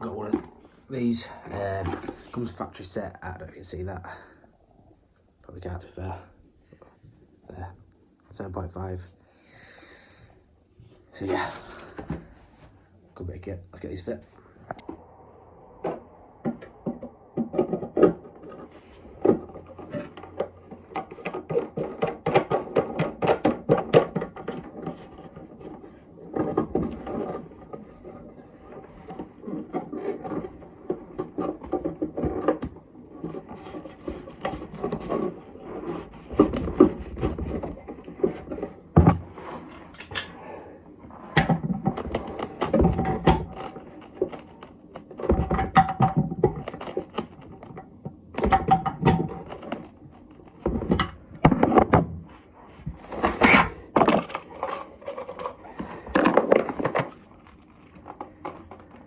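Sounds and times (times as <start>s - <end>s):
plastic cistern parts knocking: 15.8s - 39.3s, 41.2s - 59.0s.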